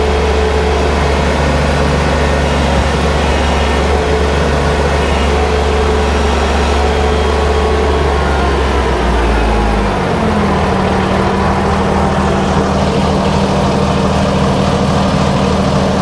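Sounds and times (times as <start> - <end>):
snowblower spinning: 0.0 - 7.8
diesel tractor engine running: 0.0 - 16.0.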